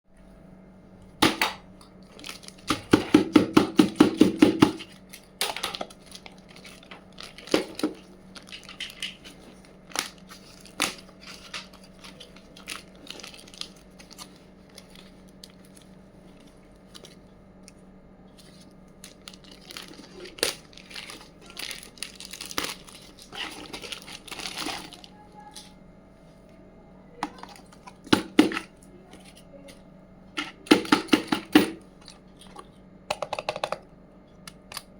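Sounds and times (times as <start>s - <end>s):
faint steady hum: 0.1s - 34.9s
plastic and paper crinkling: 2.0s - 3.0s, 4.7s - 25.8s, 27.2s - 28.1s.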